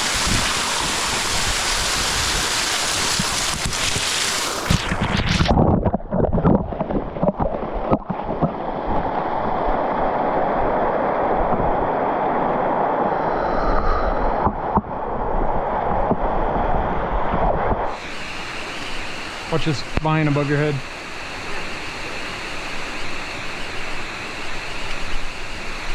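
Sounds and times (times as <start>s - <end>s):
water rushing: 0.0s - 25.9s
knocks and splashes: 2.2s - 9.1s.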